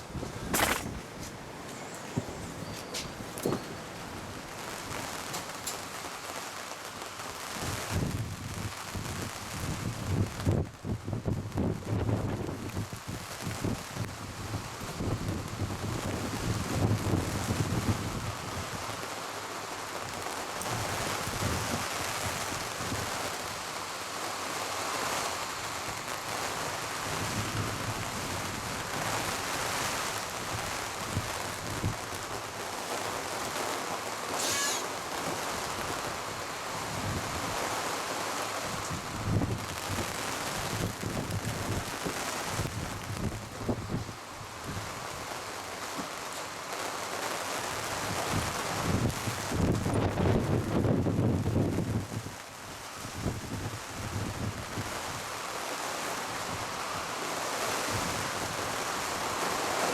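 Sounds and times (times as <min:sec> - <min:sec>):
gusty wind buffeting microphone: 0:00.0 - 0:05.7, 0:07.6 - 0:18.9, 0:38.6 - 0:45.3, 0:47.9 - 0:52.4
rain: 0:00.0 - 0:59.9.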